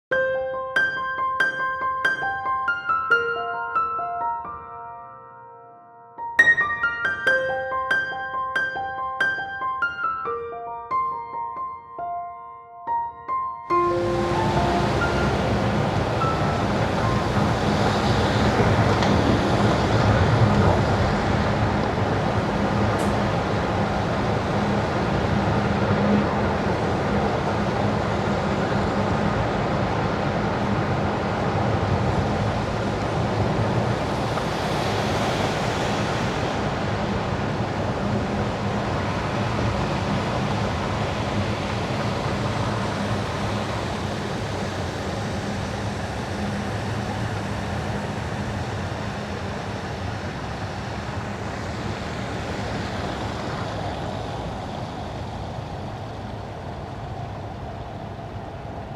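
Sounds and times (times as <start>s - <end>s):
tyre hiss on wet road: 13.8s - 25.3s, 32.7s - 41.2s, 42.0s - 55.2s
low hum: 13.8s - 28.5s.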